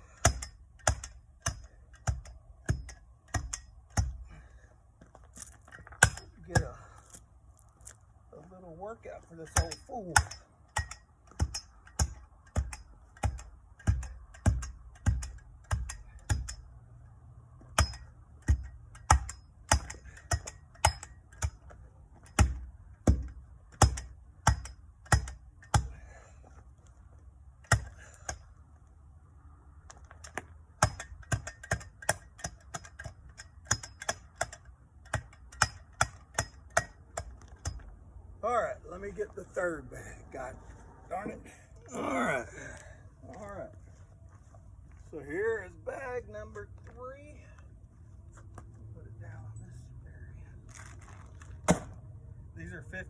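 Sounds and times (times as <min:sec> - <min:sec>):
hand tool pounding asphalt: 0:00.0 - 0:07.0, 0:09.4 - 0:16.6, 0:17.6 - 0:26.2, 0:27.6 - 0:28.5, 0:30.2 - 0:37.9.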